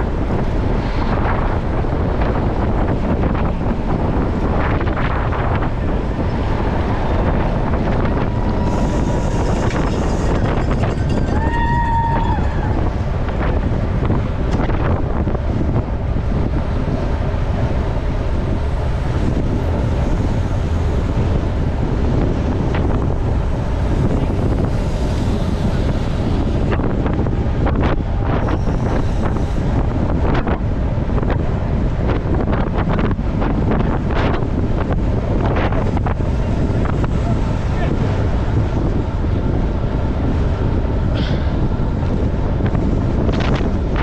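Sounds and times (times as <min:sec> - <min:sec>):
bicycle tyre noise: 0:00.0 - 0:44.0
wind buffeting microphone: 0:00.0 - 0:44.0
bicycle clicks and rattles: 0:07.5 - 0:12.6.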